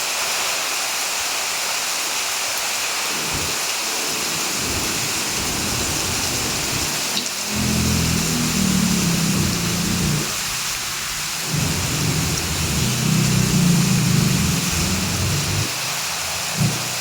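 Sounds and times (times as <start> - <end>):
heavy rain pouring: 0.0 - 17.0
rolling thunder: 4.5 - 15.7.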